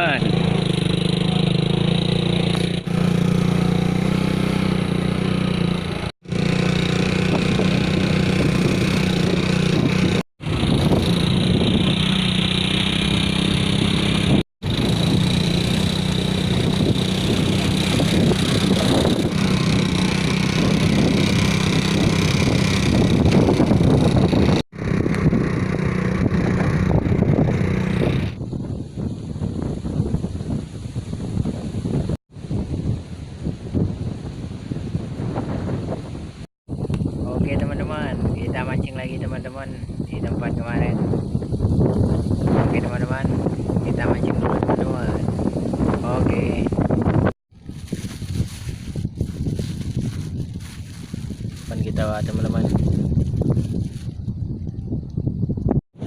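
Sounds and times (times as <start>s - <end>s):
vehicle engine running: 0.0s - 29.6s
road noise: 0.0s - 55.0s.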